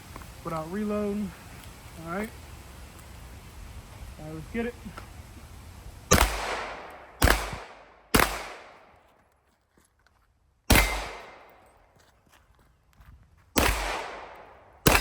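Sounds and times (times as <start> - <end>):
pistol shots echoing: 6.1 - 9.0, 10.7 - 11.6, 13.6 - 15.0.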